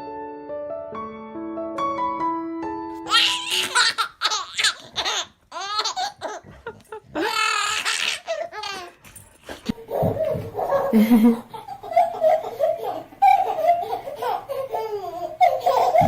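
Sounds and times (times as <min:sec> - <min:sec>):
piano notes: 0:00.0 - 0:06.4
baby laughing: 0:03.0 - 0:09.0, 0:09.6 - 0:16.0.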